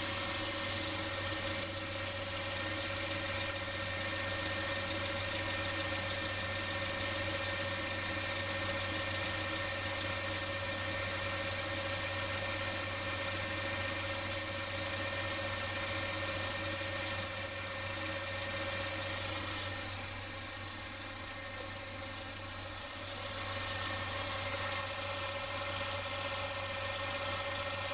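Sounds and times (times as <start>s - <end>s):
fast high-pitched ticking: 0.0s - 27.9s
car engine running: 17.0s - 27.9s.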